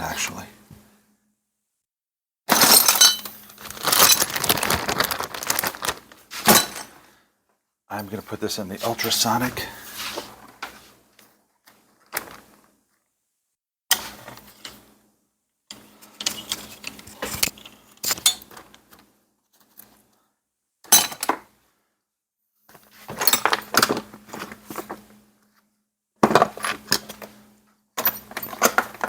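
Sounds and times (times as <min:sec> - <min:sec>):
metal parts clinking and clattering: 0:02.5 - 0:07.0, 0:23.1 - 0:24.0, 0:28.0 - 0:29.0.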